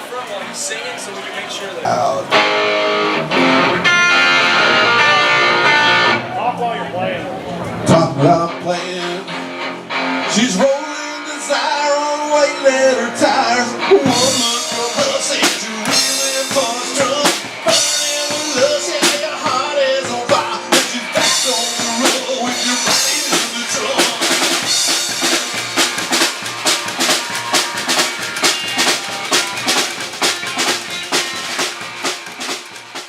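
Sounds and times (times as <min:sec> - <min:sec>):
rockabilly band playing live: 0:01.9 - 0:06.7, 0:07.3 - 0:33.0
snare and bass drum beat: 0:13.9 - 0:33.0.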